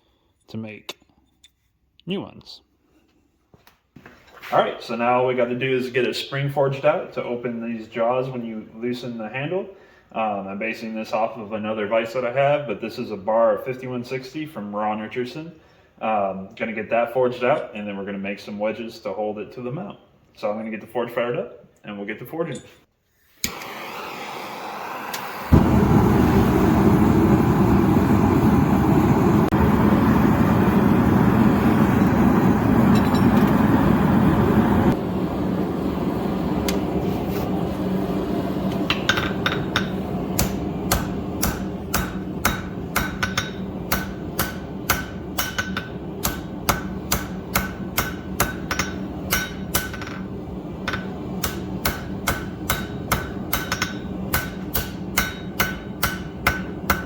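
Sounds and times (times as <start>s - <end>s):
forge roaring: 23.6s - 44.4s
hammer ringing on steel bar: 39.1s - 50.2s, 50.9s - 57.0s.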